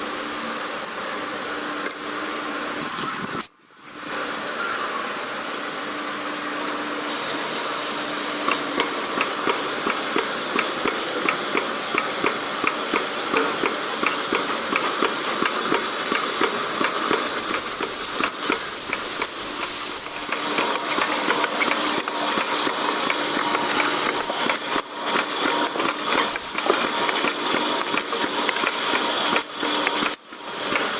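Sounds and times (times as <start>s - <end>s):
machine hiss: 7.1s - 30.9s
machine clacking: 8.4s - 30.9s.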